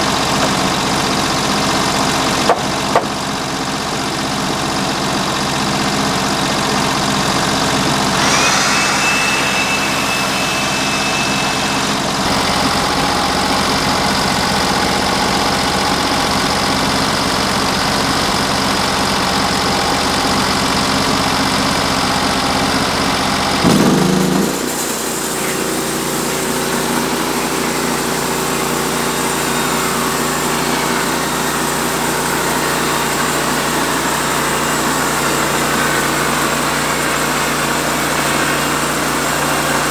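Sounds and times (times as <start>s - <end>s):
sawmill engine running: 0.0s - 39.9s
thin high whine: 8.2s - 12.8s.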